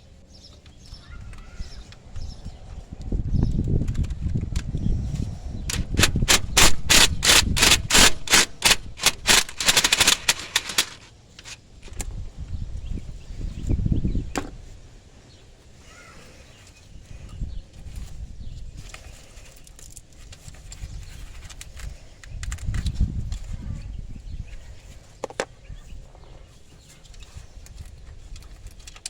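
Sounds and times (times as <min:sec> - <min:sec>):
low rumbling handling noise: 0:00.5 - 0:12.6
ratchet wrench clicking: 0:05.7 - 0:11.6.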